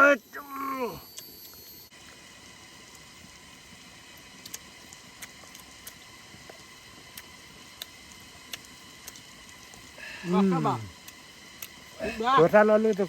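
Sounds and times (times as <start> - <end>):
outdoor background hiss: 0.0 - 13.0
thin steady tones: 0.0 - 13.0
small clicks and ticks: 4.2 - 9.9, 12.7 - 13.0.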